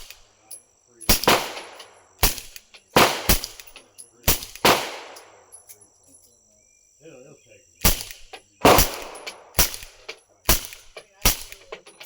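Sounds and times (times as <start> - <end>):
suppressed pistol shots: 1.1 - 5.5, 7.8 - 11.9.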